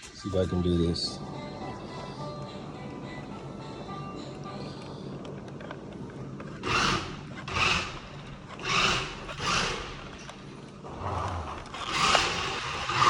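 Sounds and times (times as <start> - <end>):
toy car electric motor whirring: 6.5 - 13.0.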